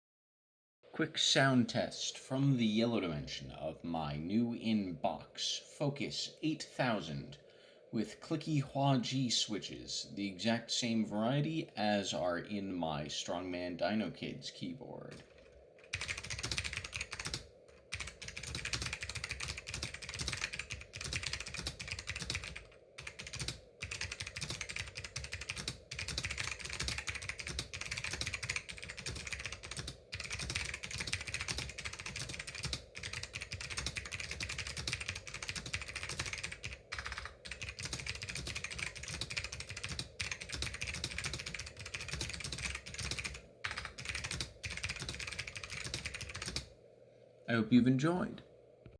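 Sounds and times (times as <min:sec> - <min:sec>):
fast typing on clicky keyboard: 0:15.1 - 0:46.7.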